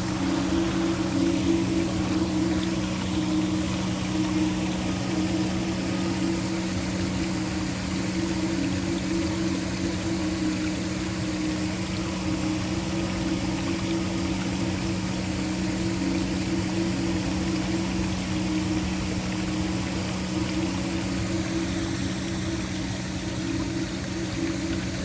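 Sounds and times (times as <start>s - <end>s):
waterfall rushing: 0.0s - 15.0s
low background drone: 0.0s - 25.0s.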